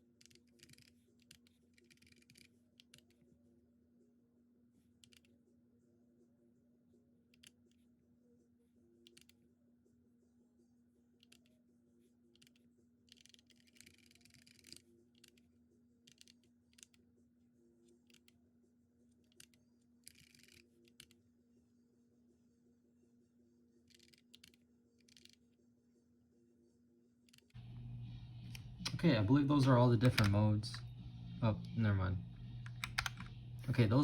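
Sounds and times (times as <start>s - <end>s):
faint steady hum: 26.0s - 34.0s
mechanical keyboard key clicks: 32.6s - 33.4s.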